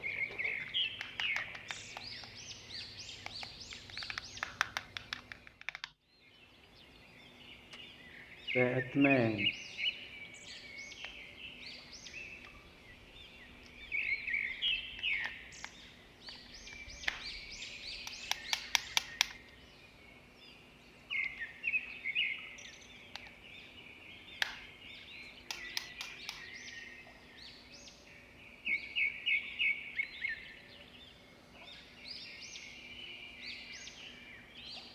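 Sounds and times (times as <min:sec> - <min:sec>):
small birds chirping: 0:00.0 - 0:34.9
sharp clicks: 0:00.3 - 0:06.0, 0:14.9 - 0:19.6, 0:23.1 - 0:23.4, 0:24.4 - 0:24.7, 0:25.4 - 0:26.7.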